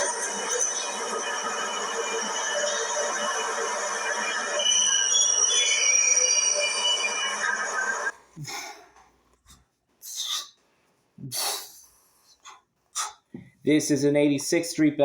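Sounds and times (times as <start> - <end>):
high squealing tones: 0.0 - 8.1
subway train noise: 0.0 - 8.1
short breaths close to microphone: 11.2 - 13.3.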